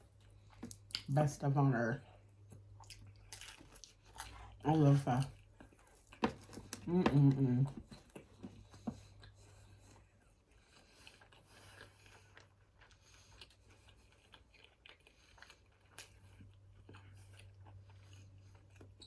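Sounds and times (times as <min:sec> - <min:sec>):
person chewing food: 0:00.0 - 0:01.2, 0:02.0 - 0:19.0.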